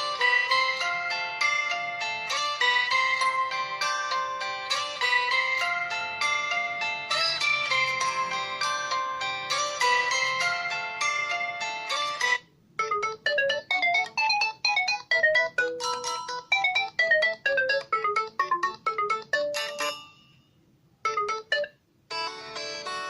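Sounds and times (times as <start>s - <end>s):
phone ringtone melody: 0.0s - 23.0s.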